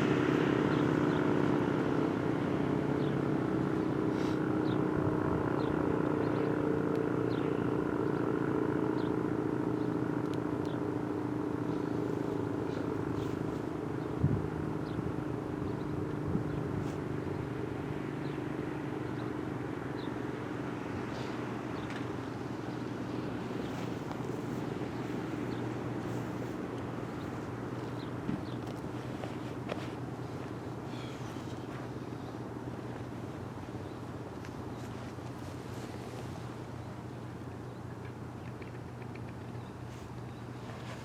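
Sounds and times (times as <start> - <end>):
outdoor warning siren: 18.8 - 28.0.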